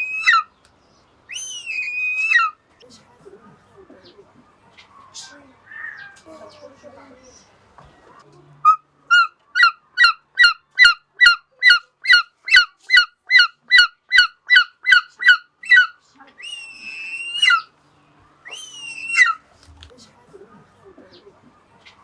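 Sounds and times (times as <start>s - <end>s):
hawk calling: 8.6s - 17.7s, 18.5s - 19.5s.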